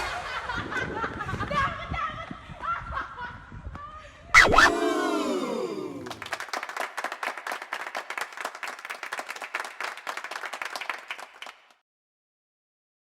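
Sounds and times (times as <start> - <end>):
crowd applauding: 4.8 - 11.8.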